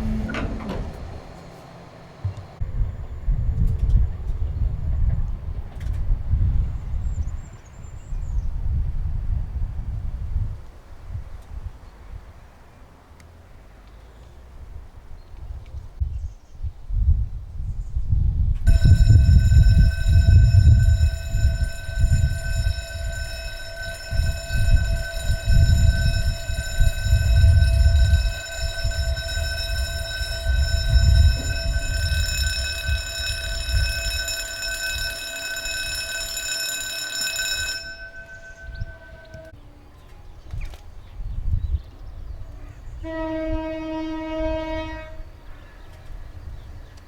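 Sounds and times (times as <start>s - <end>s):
loud uneven low rumble: 0.0s - 5.7s, 18.7s - 35.3s
level crossing alarm high tone: 18.7s - 39.5s.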